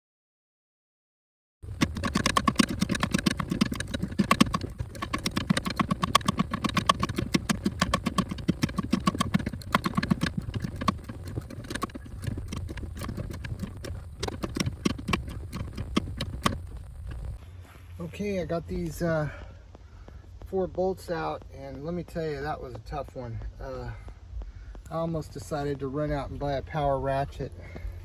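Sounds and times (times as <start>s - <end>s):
hand ratchet clicking: 1.7s - 17.4s.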